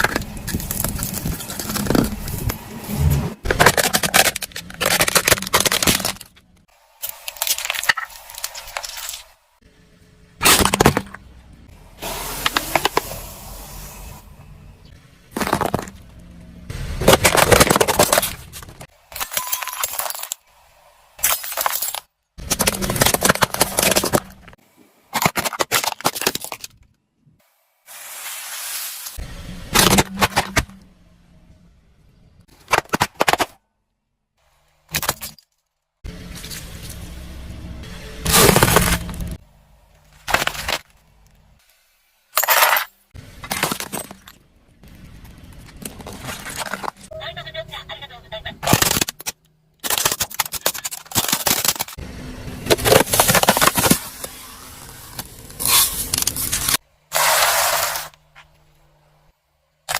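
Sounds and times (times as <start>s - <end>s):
plastic crunching under car tyre: 3.4s - 6.6s, 15.3s - 16.2s, 38.2s - 39.4s, 52.7s - 58.5s
plastic cracking under car tyre: 3.5s - 6.5s.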